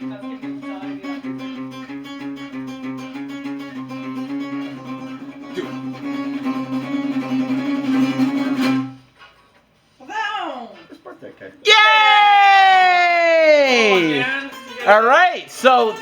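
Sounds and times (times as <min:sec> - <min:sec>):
fast plucked notes: 0:00.0 - 0:09.0.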